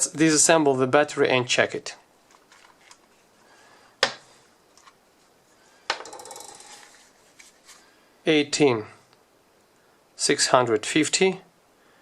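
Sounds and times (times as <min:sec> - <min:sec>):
faint handling sounds: 0:01.9 - 0:03.6, 0:06.5 - 0:08.0.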